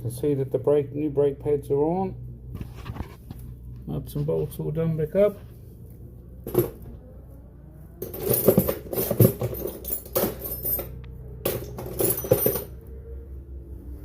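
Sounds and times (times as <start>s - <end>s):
metal tools clinking and clattering: 8.0s - 12.8s.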